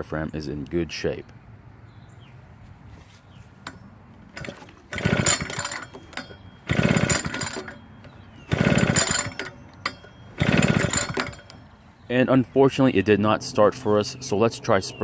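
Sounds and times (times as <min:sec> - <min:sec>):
engine pull-starter cranking: 0:03.6 - 0:11.7.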